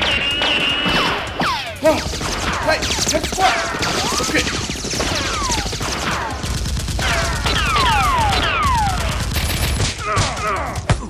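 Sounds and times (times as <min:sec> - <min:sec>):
falling whistling whizzes: 0:00.0 - 0:01.2
rapid gunfire effects: 0:00.0 - 0:11.0.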